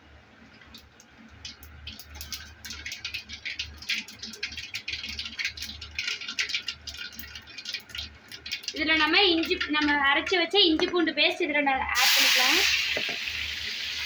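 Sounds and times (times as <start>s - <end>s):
seeds popping in hot oil: 0.6s - 11.2s, 12.0s - 14.0s.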